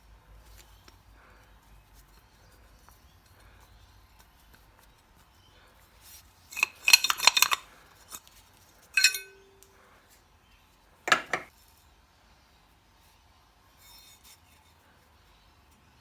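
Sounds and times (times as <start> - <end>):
metal pieces clinking: 6.5 - 8.3, 9.0 - 9.7.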